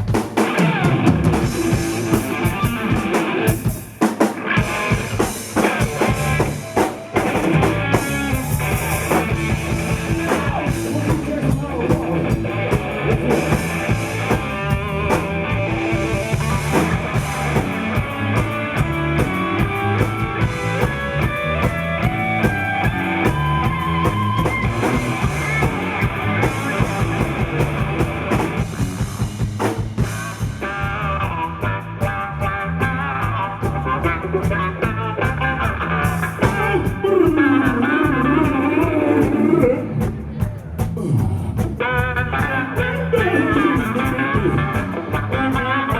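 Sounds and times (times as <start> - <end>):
drum kit: 0.0 - 45.9
guitar: 0.0 - 45.9
live rock band playing: 0.0 - 45.9.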